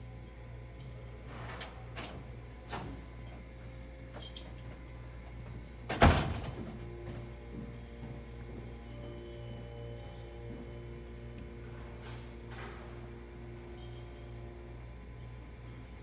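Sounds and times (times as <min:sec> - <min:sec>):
steady low hum: 0:00.0 - 0:16.0
elevator doors sliding: 0:05.8 - 0:07.4.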